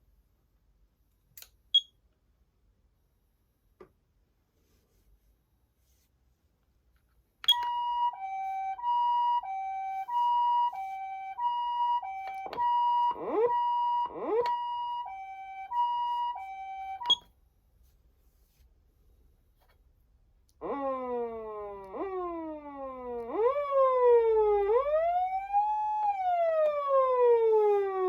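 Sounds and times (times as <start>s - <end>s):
two-tone ambulance siren: 7.5s - 17.2s, 20.6s - 28.0s
falling siren sweeps: 7.6s - 17.2s, 20.6s - 28.0s.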